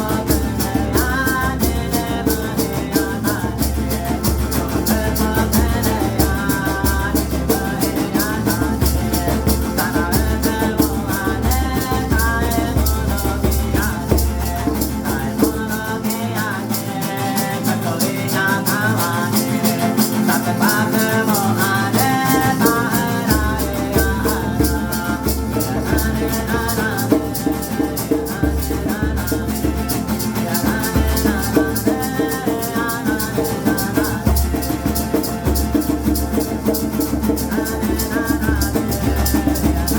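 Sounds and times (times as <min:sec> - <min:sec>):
hand rattle shaken: 0:00.0 - 0:39.9.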